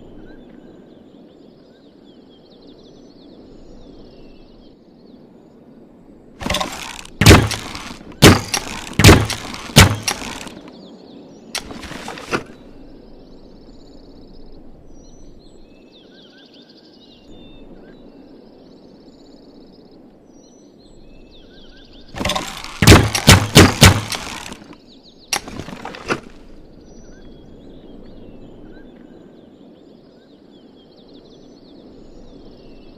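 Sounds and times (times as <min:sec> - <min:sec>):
faint birds or insects chirping: 0:00.0 - 0:32.9
wooden crossbow cracks and clacks: 0:06.4 - 0:10.7, 0:11.6 - 0:12.5, 0:22.2 - 0:24.8, 0:25.4 - 0:26.4.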